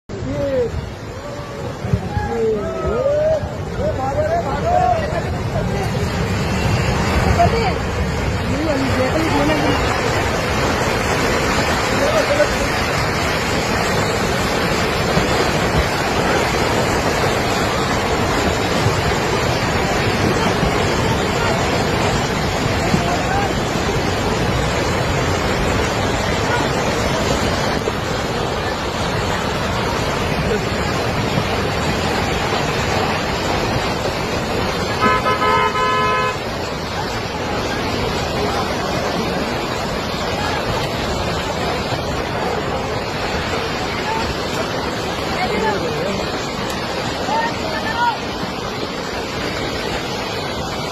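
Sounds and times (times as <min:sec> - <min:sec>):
loud steady rushing noise: 0:00.0 - 0:50.9
vehicle horn honking: 0:35.0 - 0:36.5.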